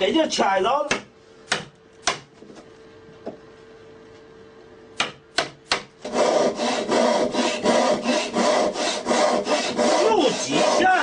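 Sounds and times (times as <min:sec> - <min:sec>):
knocks of wood and tools: 0:05.0 - 0:05.9
hand saw cutting wood: 0:06.0 - 0:11.0.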